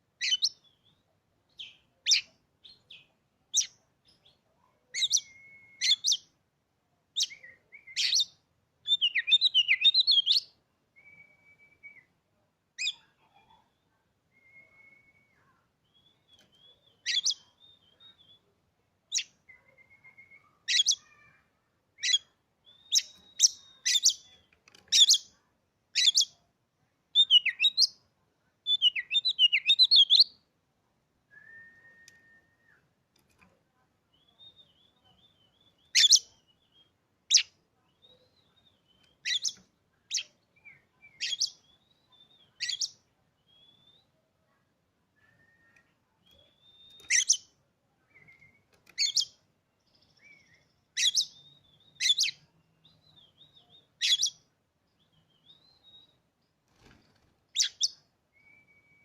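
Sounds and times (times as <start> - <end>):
bird singing sharp whistled calls: 0.2 - 3.0, 5.0 - 6.3, 7.2 - 12.1, 14.4 - 18.4, 22.0 - 24.3, 27.2 - 28.0, 28.7 - 30.4, 34.1 - 44.1, 45.2 - 47.5, 48.1 - 49.4, 50.1 - 54.4, 55.3 - 56.2, 57.6 - 59.0
soft thin bird whistles: 5.0 - 6.2, 11.0 - 12.1, 14.3 - 18.4, 19.5 - 21.0, 31.3 - 32.9, 45.2 - 47.4, 58.4 - 59.0.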